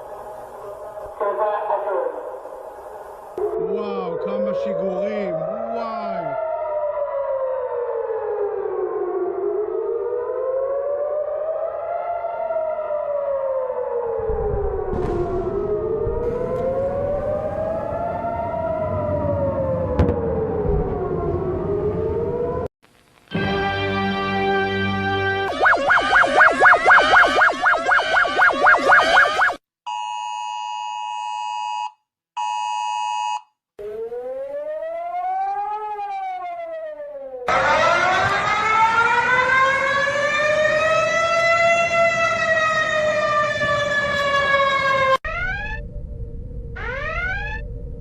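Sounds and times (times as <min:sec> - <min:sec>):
wailing warning siren: 0:00.0 - 0:22.7, 0:25.4 - 0:29.6, 0:33.8 - 0:48.0
low rumbling noise: 0:14.1 - 0:22.6, 0:45.3 - 0:48.0
electronic attention tone: 0:25.5 - 0:29.6.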